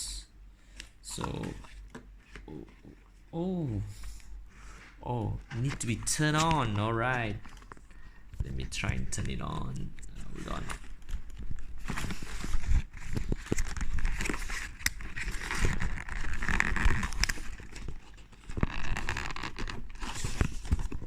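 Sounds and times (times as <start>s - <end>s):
packaging rustling: 5.2s - 21.0s.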